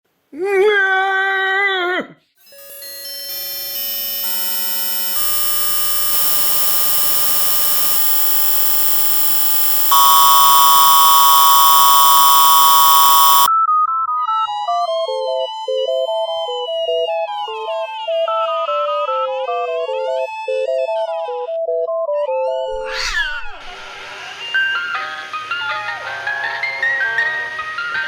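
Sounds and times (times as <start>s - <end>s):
dense electronic drone: 2.5s - 13.5s
high electronic tone: 2.5s - 13.5s
pitched whine: 2.5s - 13.5s.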